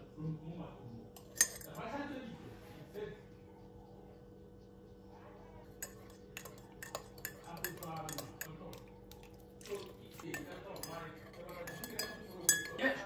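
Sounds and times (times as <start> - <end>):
faint steady hum: 0.0 - 13.0
cutlery and dishes clinking: 1.2 - 1.9, 5.8 - 13.0.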